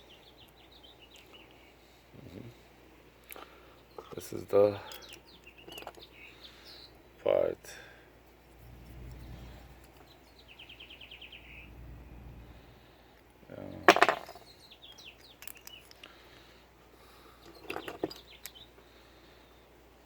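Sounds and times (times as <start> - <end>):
lock parts clicking and clattering: 4.9 - 6.1, 13.9 - 16.1, 17.4 - 18.6.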